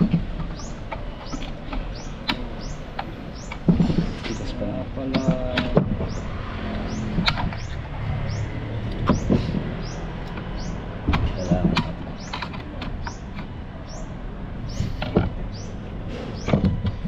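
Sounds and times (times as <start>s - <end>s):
high rising chirp: 6.0s - 12.4s.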